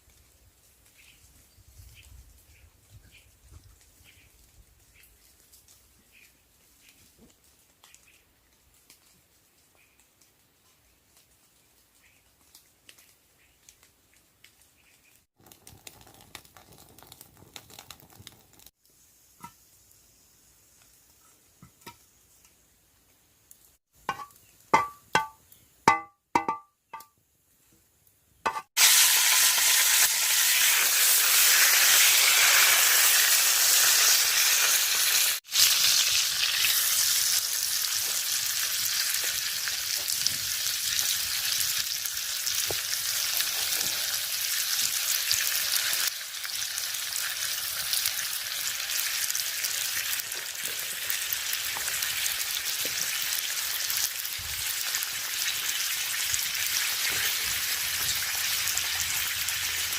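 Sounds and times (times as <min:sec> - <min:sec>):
food sizzling in a hot pan: 0:17.6 - 0:22.6, 0:28.7 - 0:59.9
sharp knocks and clinks: 0:24.1 - 0:27.1.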